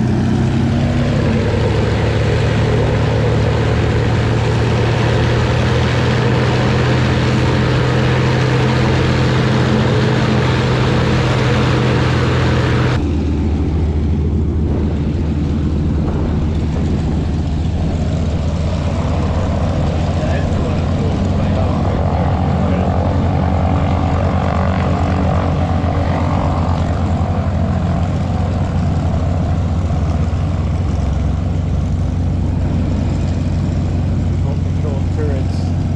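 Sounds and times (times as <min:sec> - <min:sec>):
propeller aircraft engine drone: 0:00.0 - 0:35.9.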